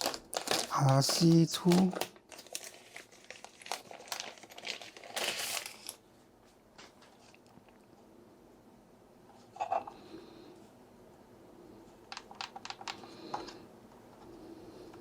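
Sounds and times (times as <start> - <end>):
plastic packaging crinkling: 0.0 - 6.0.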